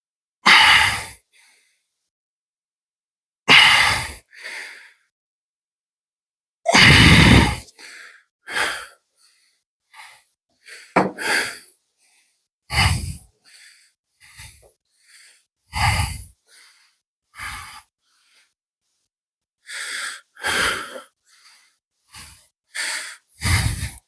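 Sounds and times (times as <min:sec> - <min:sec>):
man breathing heavily: 0:06.7 - 0:18.6, 0:19.6 - 0:24.0.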